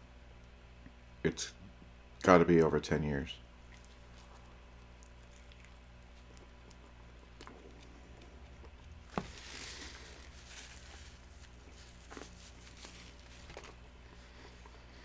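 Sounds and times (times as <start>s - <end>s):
man chewing: 3.6s - 15.0s.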